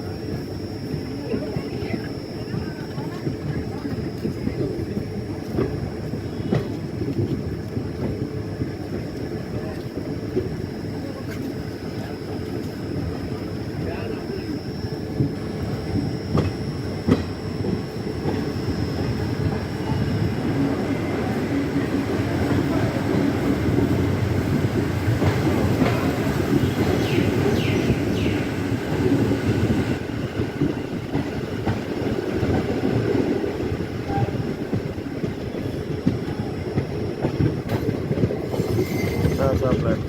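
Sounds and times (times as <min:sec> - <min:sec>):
train wheels rumbling on rails: 0:00.0 - 0:40.0
clickety-clack of rail joints: 0:00.3 - 0:40.0
faint wheel squeal: 0:38.5 - 0:39.8.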